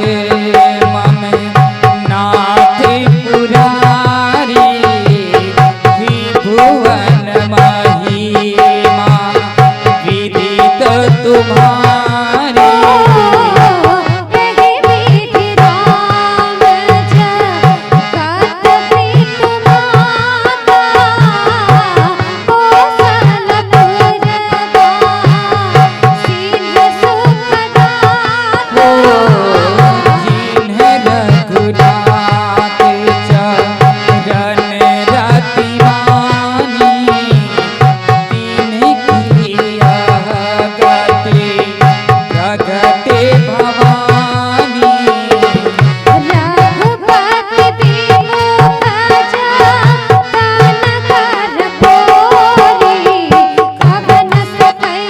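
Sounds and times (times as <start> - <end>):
tabla drum strokes: 0.0 - 55.0
sliding melody line: 28.6 - 31.6.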